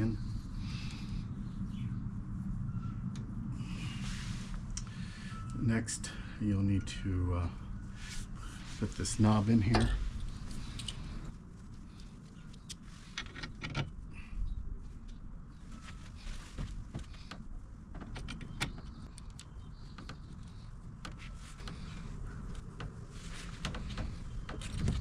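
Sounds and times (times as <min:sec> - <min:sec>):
low steady hum: 0:00.0 - 0:25.0
metal parts clicking and rattling: 0:12.0 - 0:14.0.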